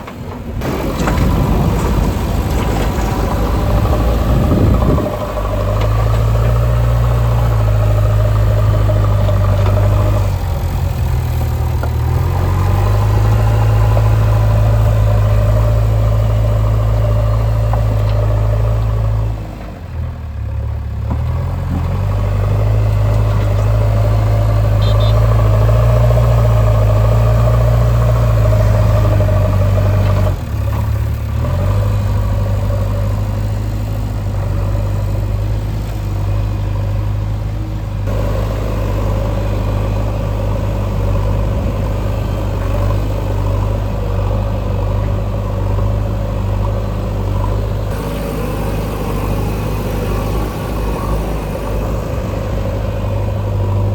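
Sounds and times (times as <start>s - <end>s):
diesel engine droning: 0.0s - 53.9s.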